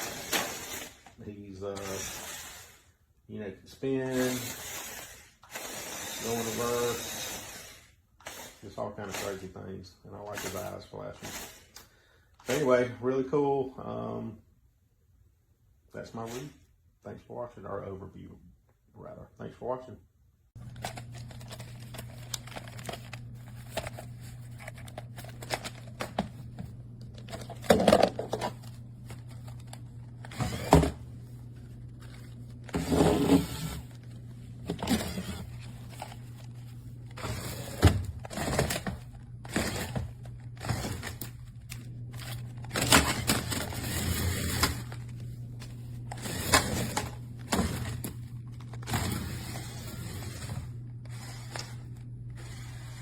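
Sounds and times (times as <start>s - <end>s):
small electric motors humming: 0.0s - 1.1s, 1.8s - 2.9s, 4.1s - 9.4s, 20.6s - 53.0s.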